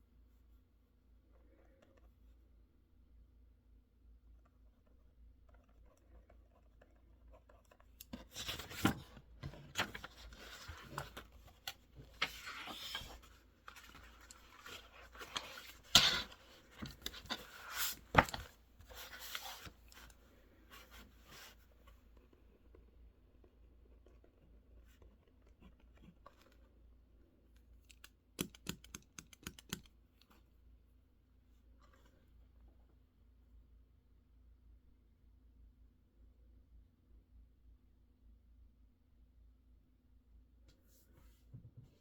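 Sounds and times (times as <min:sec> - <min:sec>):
writing and paper rustling: 0:04.4 - 0:26.8.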